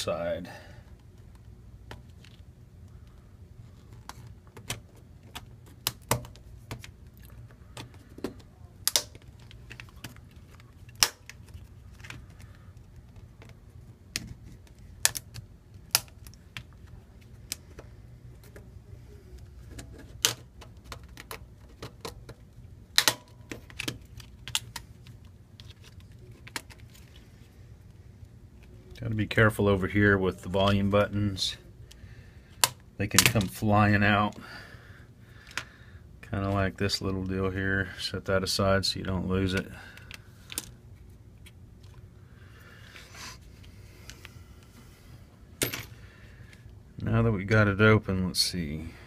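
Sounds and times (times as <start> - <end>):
steady low hum: 0.0 - 49.0
plastic clips snapping loose: 7.8 - 10.2.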